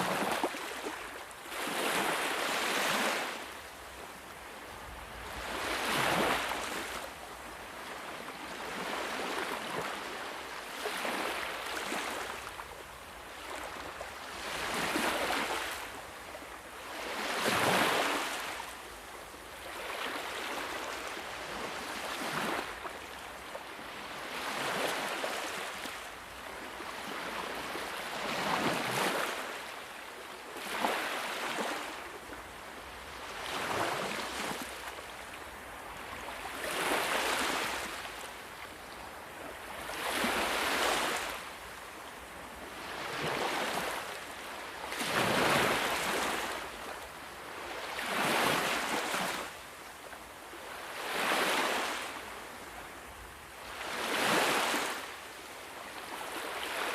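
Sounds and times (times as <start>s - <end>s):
sea waves breaking on shore: 0.0s - 53.0s, 53.6s - 56.9s.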